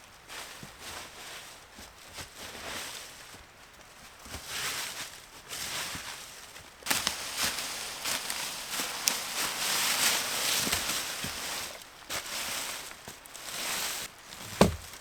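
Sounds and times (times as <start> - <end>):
footsteps in dry leaves: 0.2 - 15.0
small knocks: 14.4 - 15.0.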